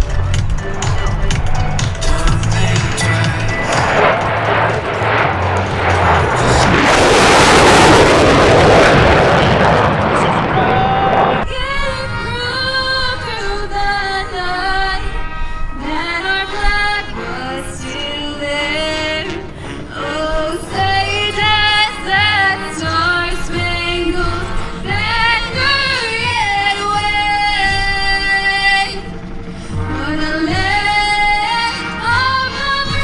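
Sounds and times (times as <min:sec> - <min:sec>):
pop song with female vocal: 0:00.0 - 0:05.2, 0:11.4 - 0:33.0
steady low beat: 0:00.0 - 0:11.4.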